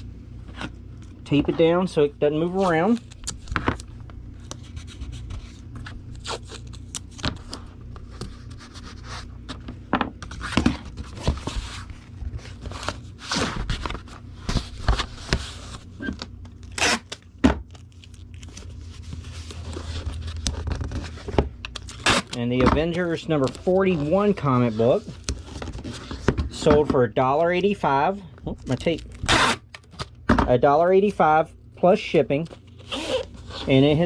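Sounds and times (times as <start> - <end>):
steady low hum: 0.0 - 34.0
packing tape tearing: 6.1 - 7.6, 16.1 - 18.8, 19.4 - 22.4, 28.7 - 30.1, 32.7 - 33.7
cardboard mailer scraping and rustling: 10.2 - 17.1.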